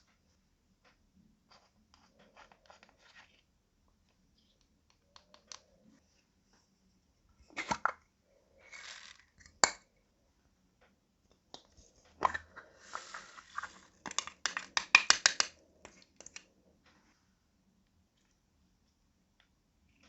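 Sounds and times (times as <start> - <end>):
soft scraping: 11.8 - 14.0.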